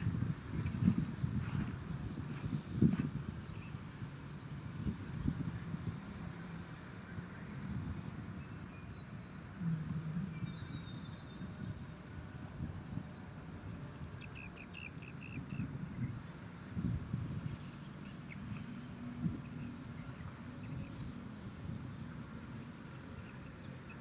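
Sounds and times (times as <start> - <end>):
birds twittering: 0.0 - 4.4, 12.8 - 16.3.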